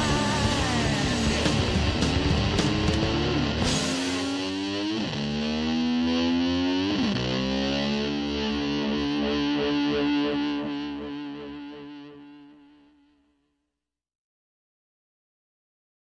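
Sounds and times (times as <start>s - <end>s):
distorted electric guitar: 0.0s - 13.2s.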